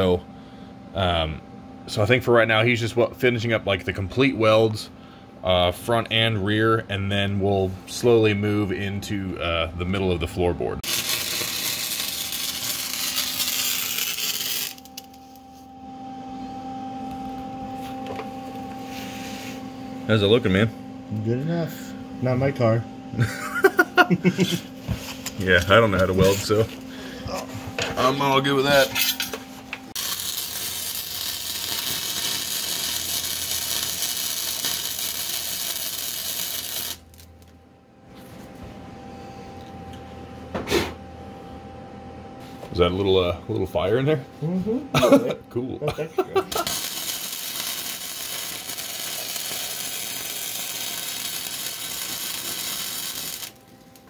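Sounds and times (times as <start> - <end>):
faint steady hum: 0.0 - 54.0
welding arc crackling: 10.8 - 15.1, 29.9 - 37.6, 46.4 - 54.0.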